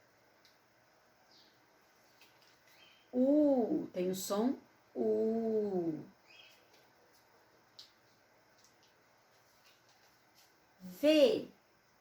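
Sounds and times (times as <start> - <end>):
faint high chirps: 1.2 - 3.9, 5.2 - 6.8.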